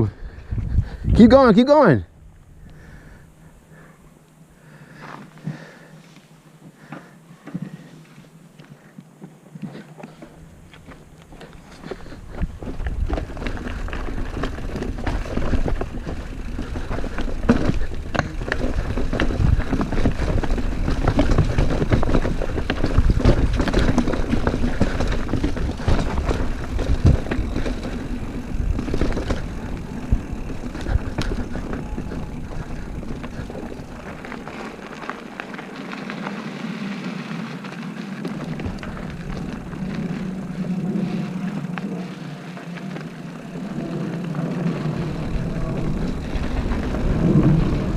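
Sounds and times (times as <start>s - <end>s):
wind rumbling on microphone: 0.0s - 1.4s, 10.4s - 47.9s
bike rattling over ground: 10.1s - 47.9s.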